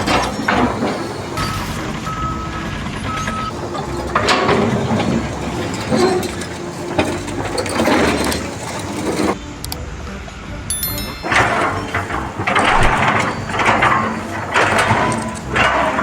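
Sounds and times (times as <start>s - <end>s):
machinery running: 0.0s - 9.6s, 10.4s - 16.0s
clattering knocks: 11.2s - 16.0s.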